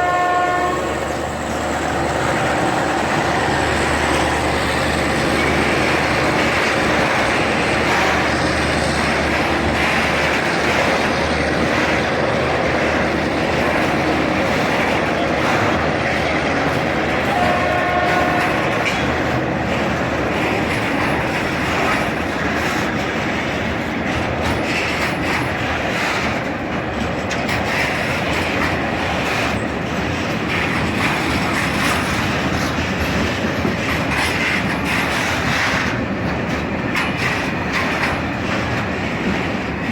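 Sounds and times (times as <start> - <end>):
train horn: 0.0 - 5.6, 17.2 - 18.9
freight train clattering on rails: 0.0 - 39.9.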